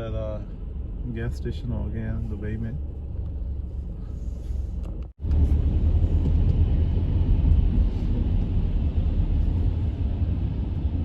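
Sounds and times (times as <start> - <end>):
car engine and tyre rumble: 0.0 - 11.0.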